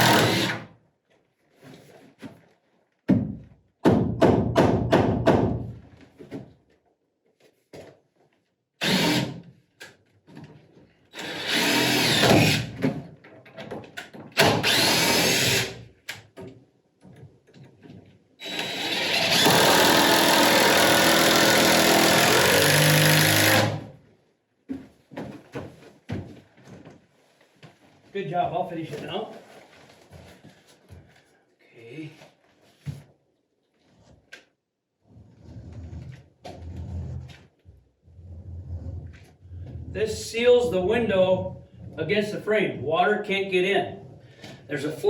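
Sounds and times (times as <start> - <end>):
power drill running: 0.0 - 0.7, 8.8 - 9.4, 11.2 - 12.7, 14.4 - 15.8, 18.4 - 23.9.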